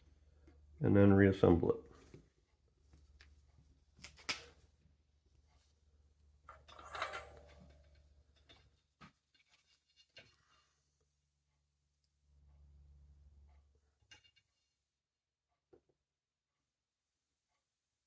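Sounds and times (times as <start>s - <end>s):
soft scraping rustle: 7.5s - 11.1s.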